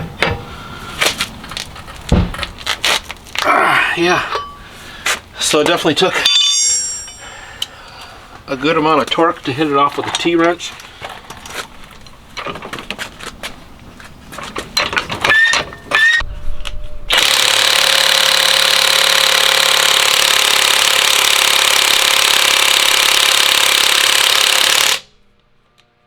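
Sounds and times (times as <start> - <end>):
impact wrench hammering: 6.2 - 7.3
tool and socket clanking: 6.2 - 7.7.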